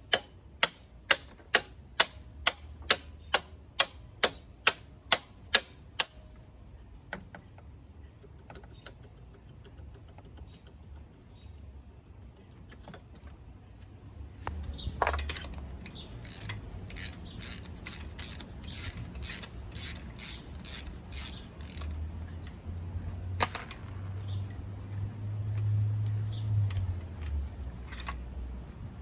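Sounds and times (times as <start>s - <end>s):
ratchet wrench clicking: 15.2s - 22.4s.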